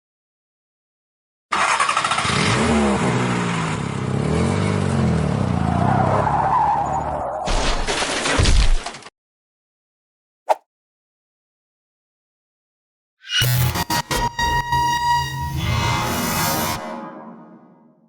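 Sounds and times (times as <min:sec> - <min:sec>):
car engine revving: 0:01.6 - 0:06.2.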